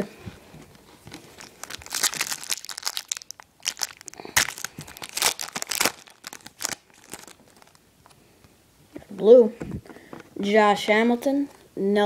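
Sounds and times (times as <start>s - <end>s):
foil wrapper tearing and crinkling: 1.1s - 7.8s.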